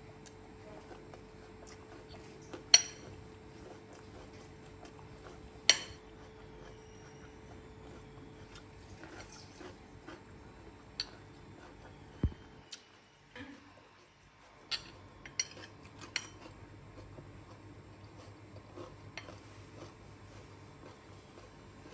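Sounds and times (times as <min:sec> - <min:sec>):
utensils clinking against dishes: 0:02.7 - 0:03.2, 0:05.6 - 0:06.0, 0:14.7 - 0:16.4.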